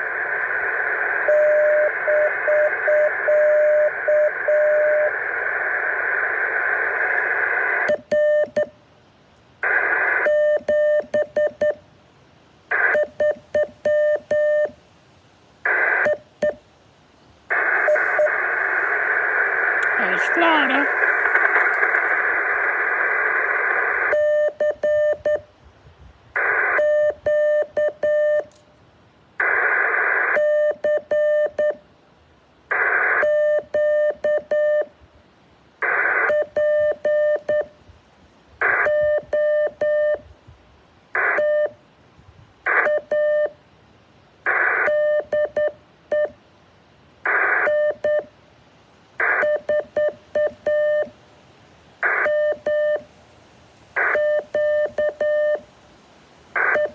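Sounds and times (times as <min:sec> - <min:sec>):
radio hiss: 0:00.0 - 0:08.4, 0:09.6 - 0:10.6, 0:12.7 - 0:13.1, 0:15.6 - 0:16.2, 0:17.5 - 0:25.1, 0:26.4 - 0:26.8, 0:29.4 - 0:30.4, 0:35.8 - 0:36.4, 0:44.4 - 0:45.2, 0:47.2 - 0:47.8, 0:49.1 - 0:51.1, 0:52.0 - 0:56.9
morse code beeps: 0:07.9 - 0:08.7, 0:38.9 - 0:40.2, 0:44.9 - 0:46.3, 0:47.7 - 0:48.2, 0:49.4 - 0:51.1, 0:52.1 - 0:53.0, 0:54.1 - 0:55.6, 0:56.6 - 0:56.9.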